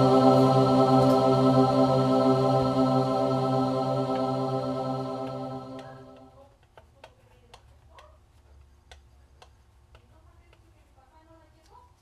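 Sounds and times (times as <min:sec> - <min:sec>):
music with long held tones: 0:00.0 - 0:06.3.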